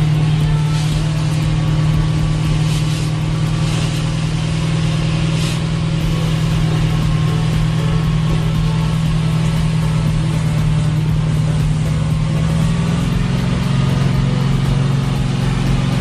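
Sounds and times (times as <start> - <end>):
car engine running steadily: 0.0 - 16.0
brief hissing rushes: 0.2 - 10.2.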